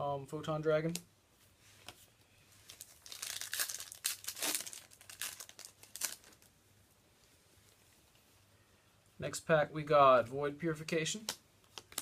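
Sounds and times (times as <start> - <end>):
foil wrapper crinkling and tearing: 2.7 - 6.5.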